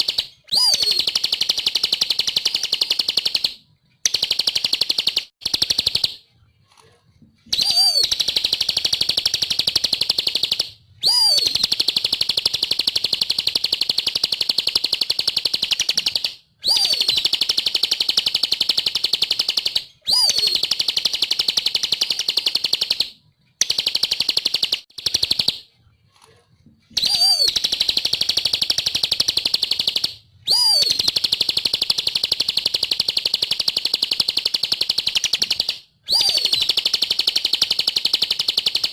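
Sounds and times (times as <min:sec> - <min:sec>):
bird trilling chirps: 0:00.0 - 0:03.4, 0:07.5 - 0:12.6, 0:15.8 - 0:17.4, 0:19.6 - 0:21.2, 0:27.0 - 0:31.9, 0:35.0 - 0:36.8.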